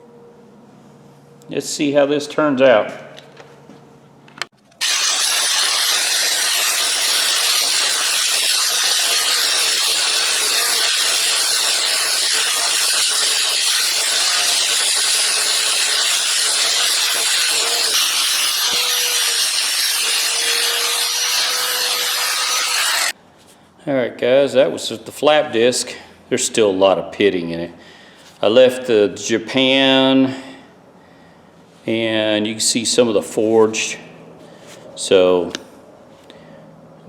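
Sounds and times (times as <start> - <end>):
grinder grinding metal: 4.8 - 23.2.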